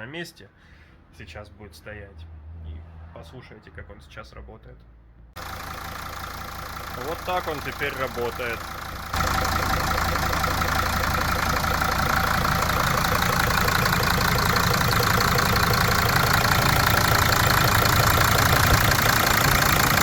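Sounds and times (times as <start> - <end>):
diesel engine idling: 5.4 - 20.0
injector clatter: 5.4 - 20.0.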